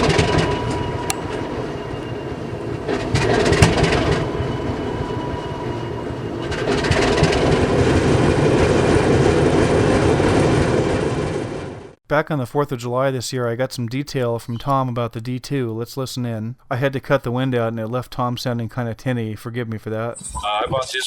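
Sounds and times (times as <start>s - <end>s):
diesel locomotive engine running: 0.0s - 12.0s.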